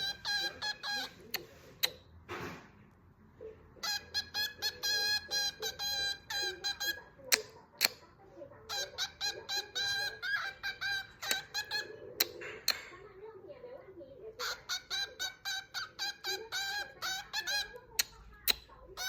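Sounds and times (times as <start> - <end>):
cockatiel chirping: 0.0 - 2.0, 3.8 - 7.5, 8.7 - 12.8, 14.4 - 19.0.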